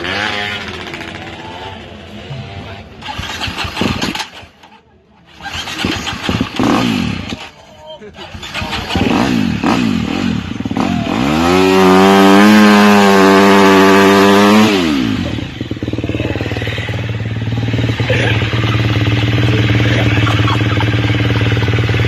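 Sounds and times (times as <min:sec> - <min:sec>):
dirt bike engine revving: 0:00.0 - 0:01.9, 0:03.0 - 0:04.6, 0:05.3 - 0:22.0.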